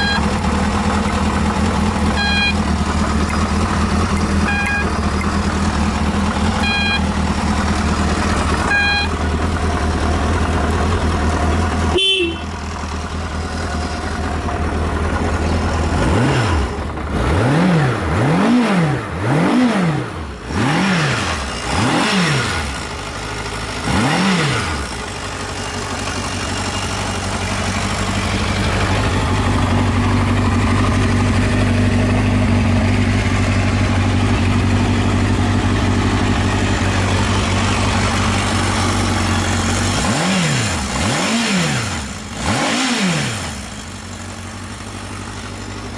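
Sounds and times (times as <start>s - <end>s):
short beeps: 0.0s - 0.4s, 2.2s - 2.7s, 4.4s - 5.3s, 6.6s - 7.1s, 8.7s - 9.2s
motorcycle engine idling and revving: 0.0s - 45.9s.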